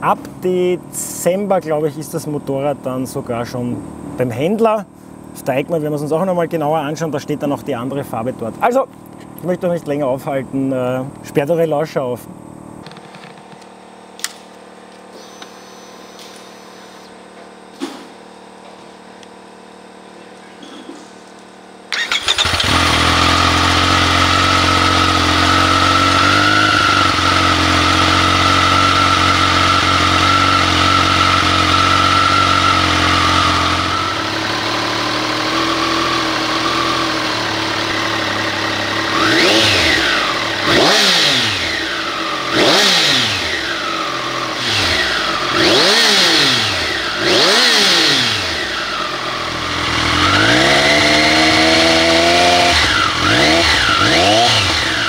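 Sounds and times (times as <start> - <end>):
motorcycle engine idling: 21.9 - 55.0
motorcycle engine revving: 21.9 - 55.0.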